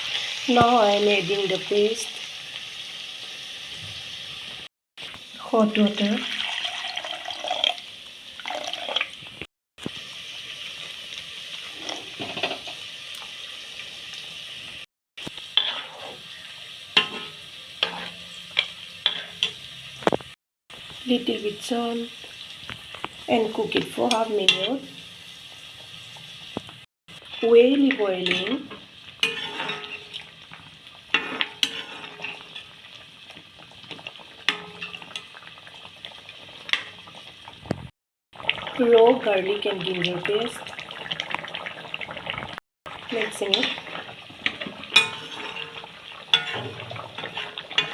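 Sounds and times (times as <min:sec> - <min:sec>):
liquid hissing and bubbling in pan: 0:00.0 - 0:47.9
curry bubbling: 0:06.2 - 0:09.5, 0:29.0 - 0:47.9
spoon stirring in a pot: 0:15.6 - 0:16.3, 0:17.0 - 0:19.7, 0:28.2 - 0:30.3, 0:31.1 - 0:33.0, 0:33.8 - 0:37.1, 0:43.4 - 0:47.9.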